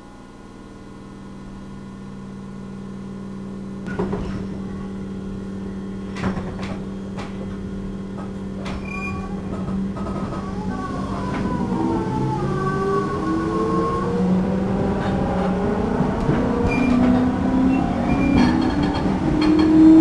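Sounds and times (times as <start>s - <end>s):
train running rumble: 1.0s - 20.0s
train motor hum: 1.6s - 20.0s
wheels clacking over rail joints: 15.0s - 20.0s.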